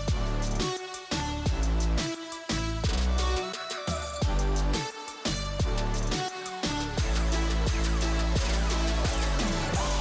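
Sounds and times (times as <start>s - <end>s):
music with steady beat: 0.0s - 10.0s
heavy bass note: 7.0s - 10.0s.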